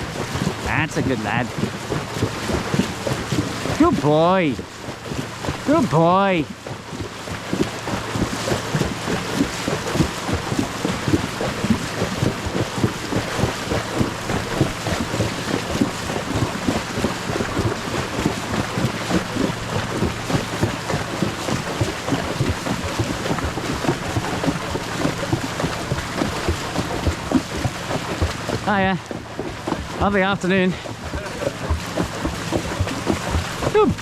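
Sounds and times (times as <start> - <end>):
horse footfalls: 0.1 - 4.0, 6.6 - 34.0.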